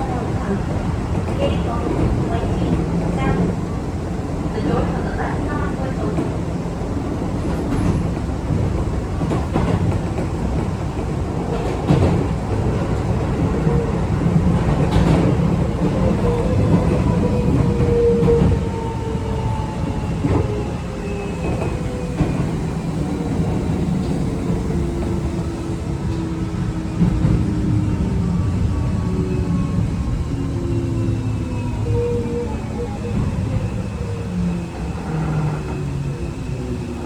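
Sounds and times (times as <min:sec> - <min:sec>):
train wheels clattering over rails: 0:04.6 - 0:19.2.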